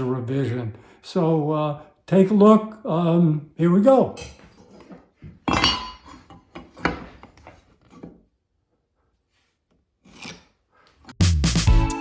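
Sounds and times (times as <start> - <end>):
background music: 11.2 - 12.0.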